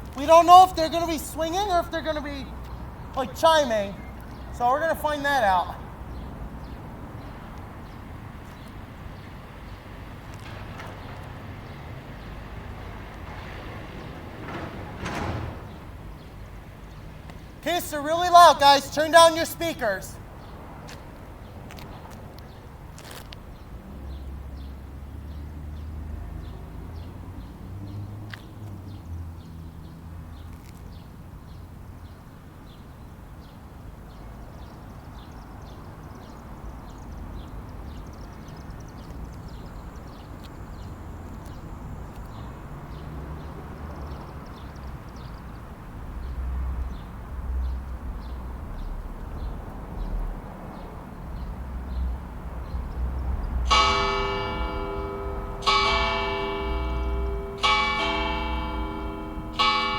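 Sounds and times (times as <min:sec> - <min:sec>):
church bells chiming: 0:17.7 - 0:20.0, 0:53.7 - 0:59.9.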